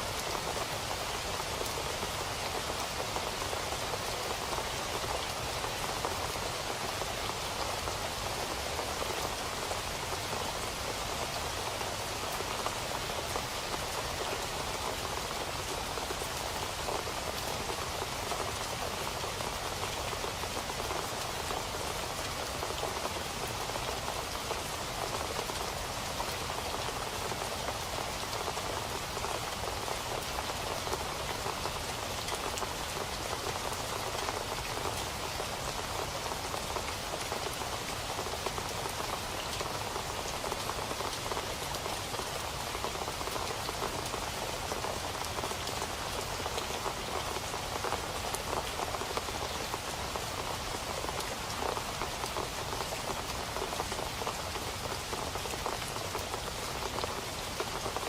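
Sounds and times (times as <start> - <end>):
steady rain patter: 0.0 - 58.0.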